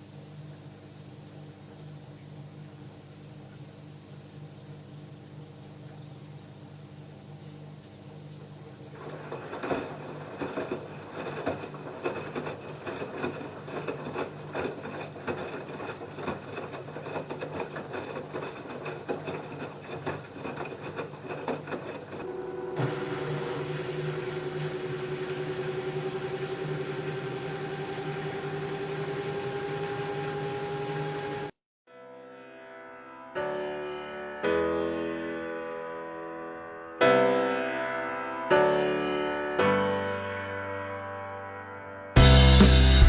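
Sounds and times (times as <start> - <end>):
washing machine motor whine: 0.0 - 31.6.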